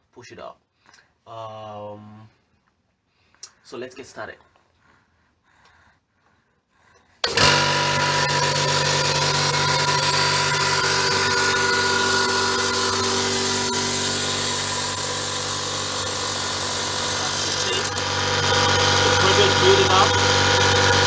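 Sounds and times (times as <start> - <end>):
air compressor running: 7.2 - 21.0.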